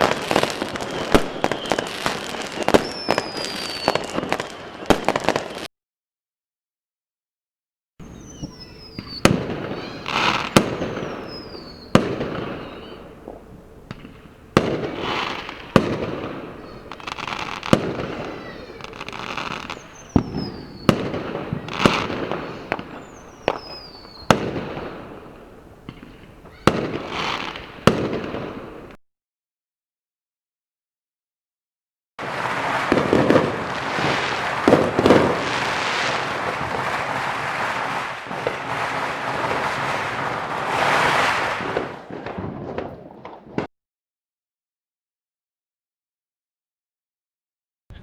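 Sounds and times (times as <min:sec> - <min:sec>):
falling firework whistles: 0:00.0 - 0:05.7, 0:08.0 - 0:29.0, 0:32.2 - 0:43.7
fireworks bangs and crackling: 0:00.0 - 0:05.7, 0:08.0 - 0:29.0, 0:32.2 - 0:43.7.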